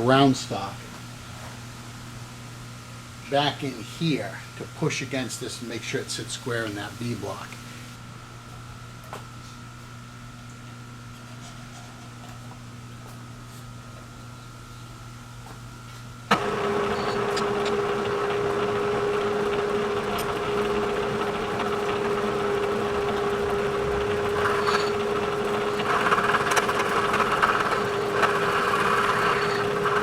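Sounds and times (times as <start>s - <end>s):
milling machine cutting: 16.3s - 30.0s
milling machine hum: 16.3s - 30.0s.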